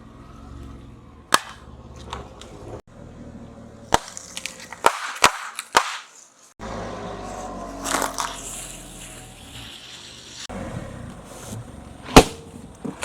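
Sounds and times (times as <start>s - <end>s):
objects cracking under car tyre: 3.8s - 6.5s, 7.3s - 13.0s.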